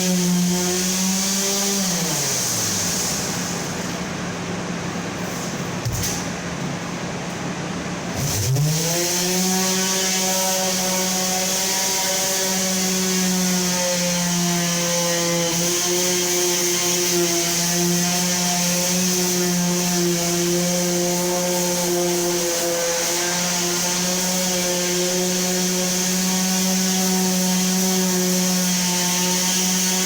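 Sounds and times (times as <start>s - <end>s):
electric sander motor: 8.2s - 30.0s.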